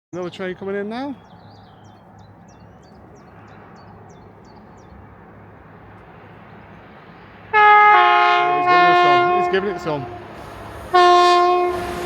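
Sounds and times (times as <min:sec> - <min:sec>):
train rumble: 0:00.2 - 0:12.0
two-note train horn: 0:07.5 - 0:12.0.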